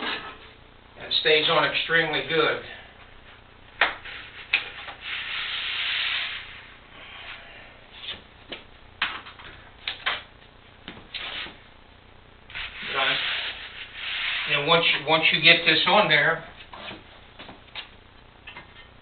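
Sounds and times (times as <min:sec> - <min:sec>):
rasping rub on metal: 0:12.5 - 0:14.6.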